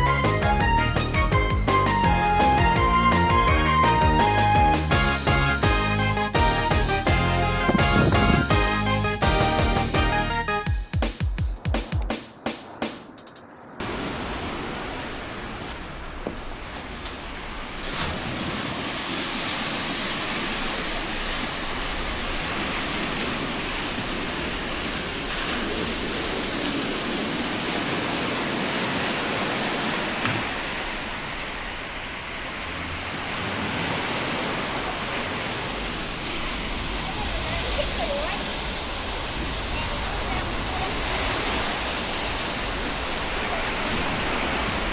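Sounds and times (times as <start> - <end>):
sea surf washing on beach: 11.1 - 44.9.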